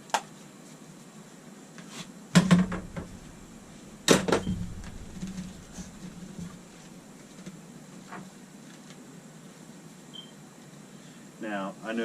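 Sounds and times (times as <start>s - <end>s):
tools knocking and clattering: 2.4s - 6.9s.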